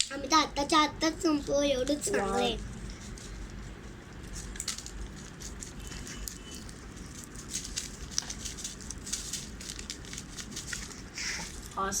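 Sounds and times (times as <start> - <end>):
popping candy crackling: 3.0 - 11.9.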